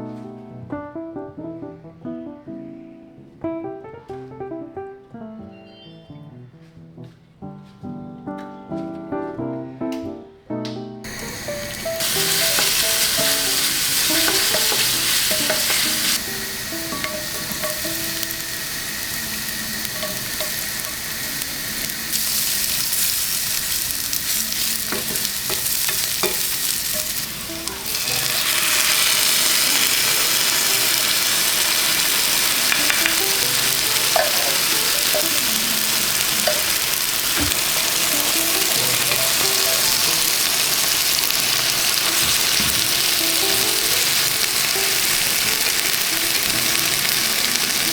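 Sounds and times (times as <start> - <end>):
food sizzling in a frying pan: 11.1 - 47.9.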